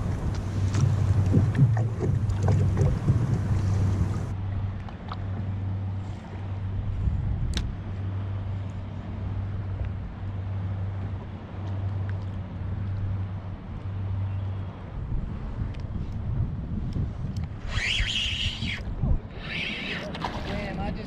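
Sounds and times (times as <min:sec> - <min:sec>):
wind noise: 0:00.0 - 0:04.4, 0:06.6 - 0:08.1, 0:14.9 - 0:21.0
pedal drive humming: 0:00.0 - 0:06.8
water noise: 0:00.0 - 0:16.3, 0:16.9 - 0:21.0
sharp high squeak: 0:17.6 - 0:18.8.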